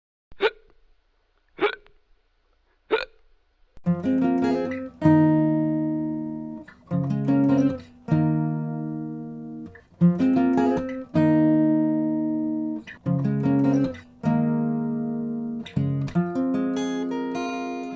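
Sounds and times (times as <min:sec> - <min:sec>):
acoustic guitar plucking: 0:03.8 - 0:17.9.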